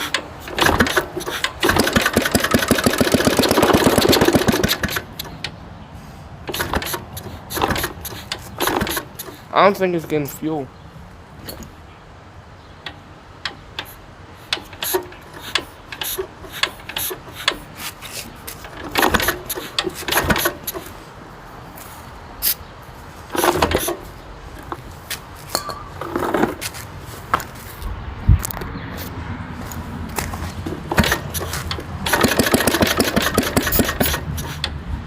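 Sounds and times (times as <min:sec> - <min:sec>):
rasping bursts: 0:00.0 - 0:05.5, 0:06.5 - 0:10.3, 0:12.9 - 0:21.1, 0:23.2 - 0:25.3, 0:30.3 - 0:34.8
tool clicks and metallic rattles: 0:00.0 - 0:05.6, 0:06.5 - 0:09.5, 0:12.8 - 0:21.0, 0:23.3 - 0:26.8, 0:30.2 - 0:34.8.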